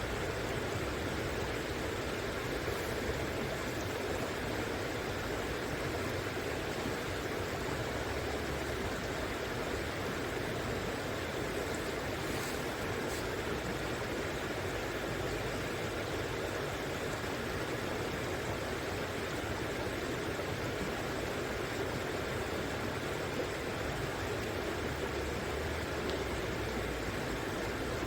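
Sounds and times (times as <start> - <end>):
river water rushing: 8.7 - 18.0.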